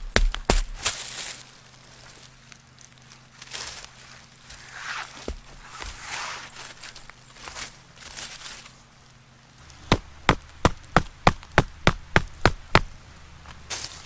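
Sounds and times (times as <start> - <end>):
wood being chopped: 0.0 - 1.0, 4.5 - 6.5, 9.7 - 13.0
rustling: 0.0 - 11.6, 12.3 - 14.0.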